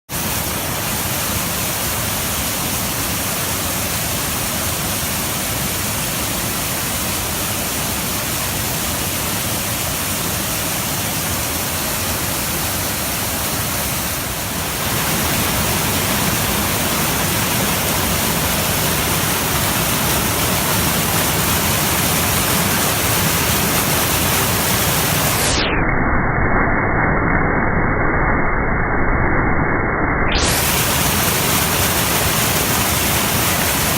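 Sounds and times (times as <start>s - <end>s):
waterfall rushing: 0.1s - 25.6s, 30.4s - 33.9s.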